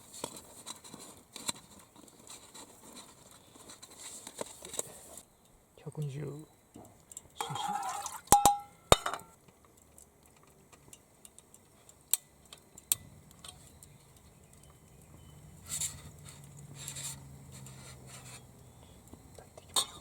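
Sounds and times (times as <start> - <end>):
metallic cookware clinks: 7.4 - 9.3, 19.7 - 20.0.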